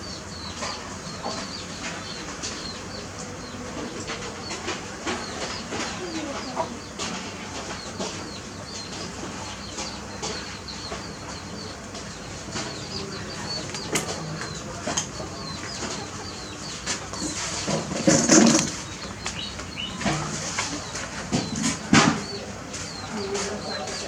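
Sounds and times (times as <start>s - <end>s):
birds chirping: 0.0s - 24.0s.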